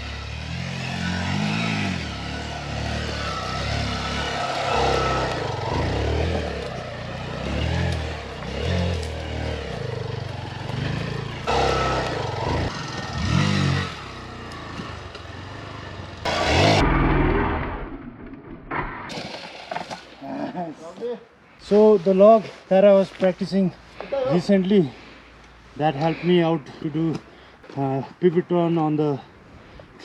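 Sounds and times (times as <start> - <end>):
motorcycle engine revving: 0.0 - 18.2.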